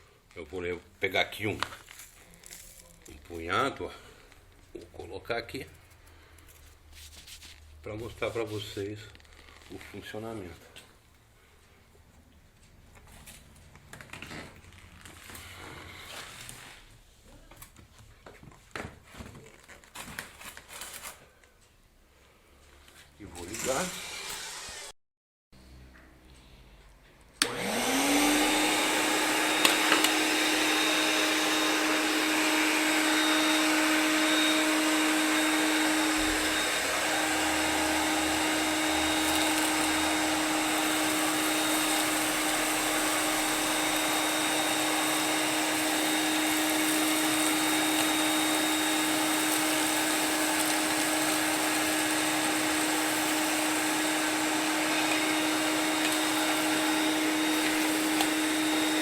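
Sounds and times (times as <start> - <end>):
vacuum cleaner motor whining: 23.4 - 24.9, 27.4 - 59.0.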